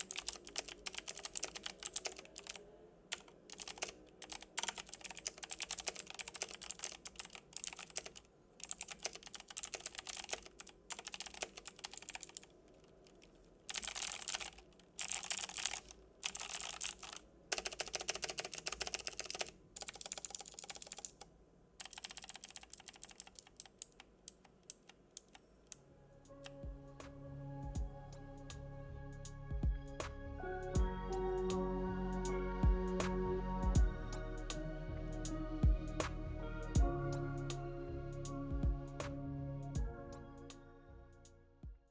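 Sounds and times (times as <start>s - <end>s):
mechanical keyboard key clicks: 0.0s - 25.8s.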